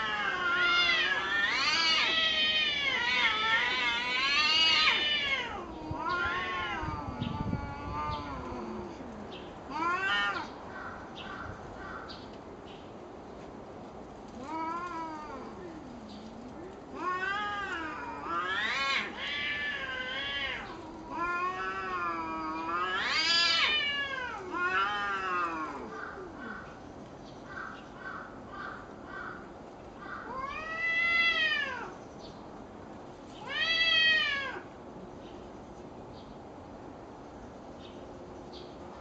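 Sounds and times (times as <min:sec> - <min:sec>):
cats caterwauling: 0:00.0 - 0:11.6, 0:14.3 - 0:26.8, 0:28.2 - 0:32.0, 0:33.3 - 0:34.8.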